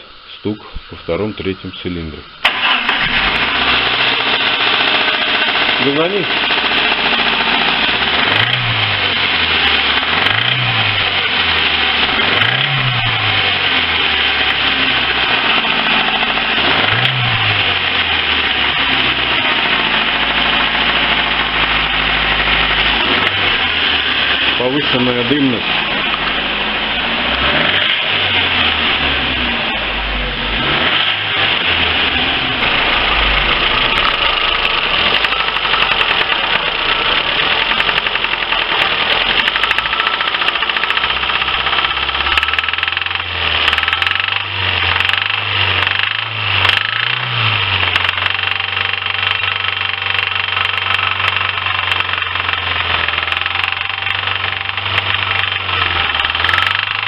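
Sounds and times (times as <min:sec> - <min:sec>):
car engine knocking: 0:32.7 - 0:57.0.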